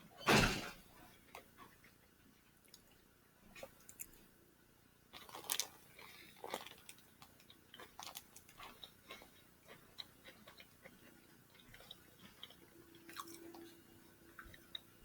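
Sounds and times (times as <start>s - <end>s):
person chewing food: 5.1s - 15.0s.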